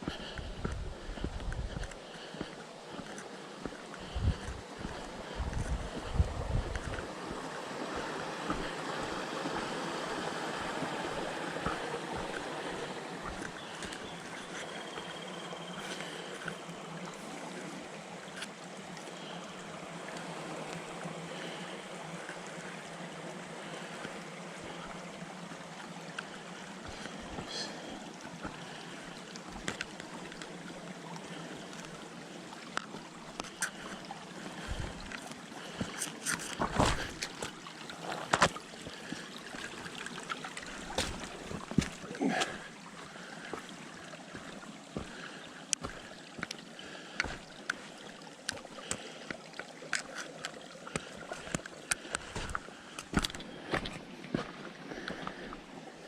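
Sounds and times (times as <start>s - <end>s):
footsteps on dirt: 0.0s - 7.4s, 8.0s - 14.8s, 33.4s - 39.8s, 40.6s - 42.7s, 45.8s - 46.6s, 51.4s - 54.6s
creek flowing: 0.0s - 56.0s.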